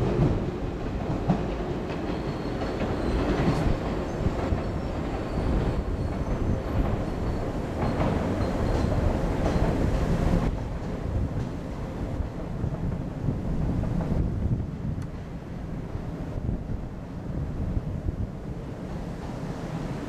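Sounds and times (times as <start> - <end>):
train wheels rumbling on rails: 0.0 - 20.0
high wheel squeals: 2.1 - 9.9.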